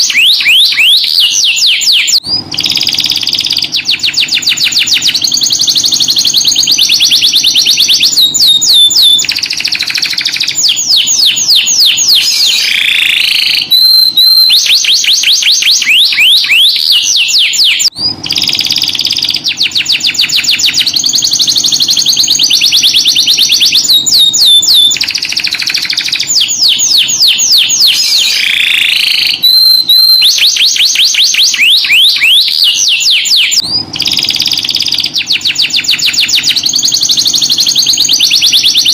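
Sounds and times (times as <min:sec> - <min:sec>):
canary singing trills: 0:00.0 - 0:38.9.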